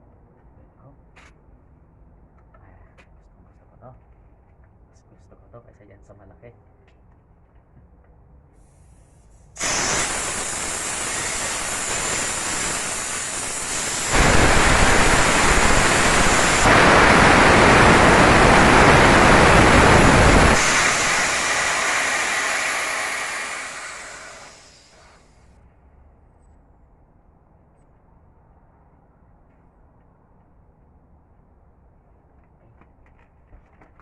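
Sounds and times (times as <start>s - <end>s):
compressed air hissing from tank: 8.6s - 25.5s.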